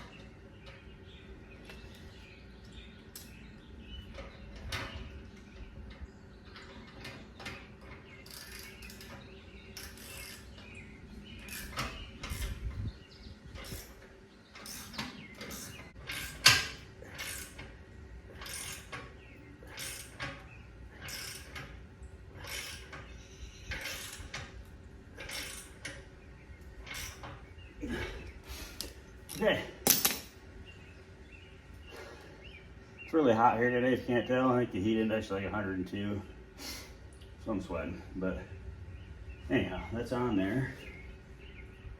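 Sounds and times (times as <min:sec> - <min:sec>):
sharp metallic clank: 0:29.8 - 0:30.3.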